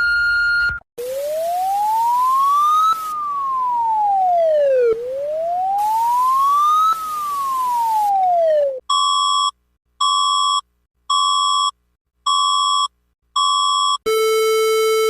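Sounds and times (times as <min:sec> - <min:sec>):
warning siren wailing: 0:01.0 - 0:08.8.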